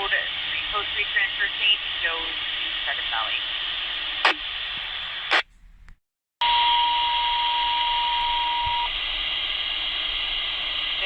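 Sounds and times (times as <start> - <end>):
radio squelch burst: 0.0 - 5.5
radio static hiss: 0.0 - 5.5, 7.6 - 11.0.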